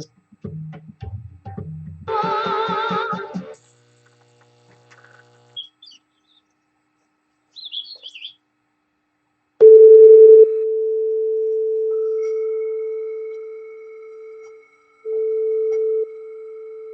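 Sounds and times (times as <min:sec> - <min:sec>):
faint warbling chirps: 0:07.6 - 0:08.4, 0:11.9 - 0:16.9
electronic test tone: 0:09.6 - 0:16.9
faint higher tone: 0:09.6 - 0:16.9.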